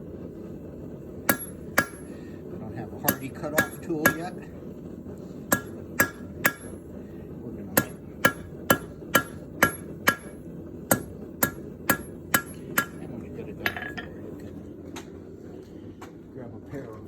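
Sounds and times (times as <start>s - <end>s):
hammer ringing on metal: 1.3s - 2.1s, 3.1s - 4.4s, 5.5s - 6.8s, 7.8s - 13.1s.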